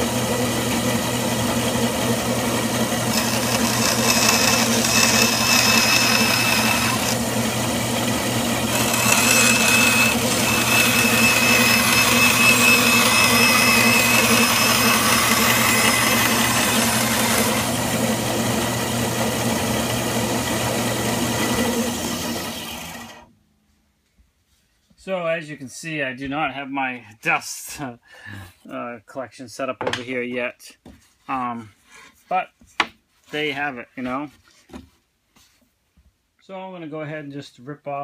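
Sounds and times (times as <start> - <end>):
bandsaw motor running: 0.0 - 23.3
saw blade whining through wood: 0.0 - 23.3.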